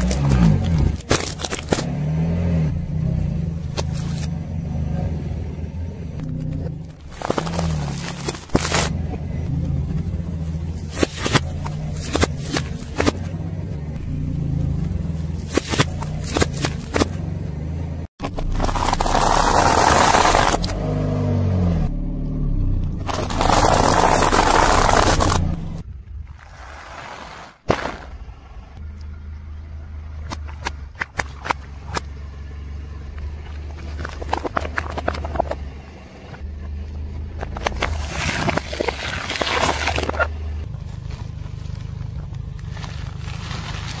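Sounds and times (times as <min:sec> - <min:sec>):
tyre crushing objects: 0:00.0 - 0:02.0, 0:06.9 - 0:09.1, 0:10.8 - 0:13.4, 0:15.3 - 0:17.2, 0:18.2 - 0:20.8, 0:23.0 - 0:25.8
car engine running: 0:00.0 - 0:26.1, 0:28.2 - 0:44.0.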